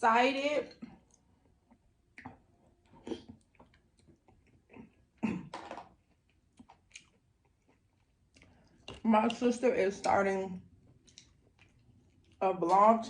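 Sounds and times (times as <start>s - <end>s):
chewing mouth sounds: 6.0s - 9.0s, 11.0s - 12.4s.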